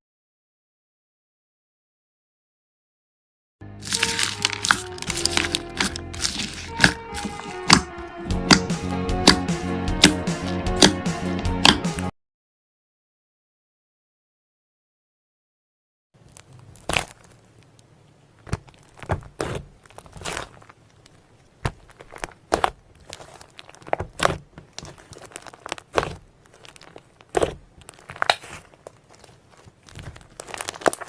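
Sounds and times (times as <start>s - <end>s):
slime squishing and crackling: 3.8s - 7.9s, 16.2s - 31.0s
sticky popping clicks: 3.9s - 12.1s.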